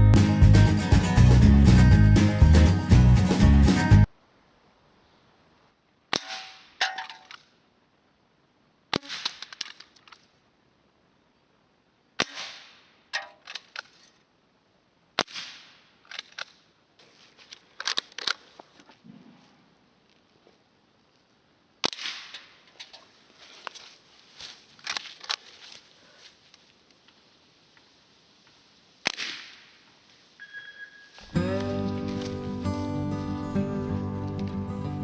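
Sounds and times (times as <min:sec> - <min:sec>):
air pistol shot cracks: 0:08.9 - 0:09.9, 0:12.2 - 0:12.8, 0:15.2 - 0:16.4, 0:21.8 - 0:22.6, 0:29.0 - 0:29.8.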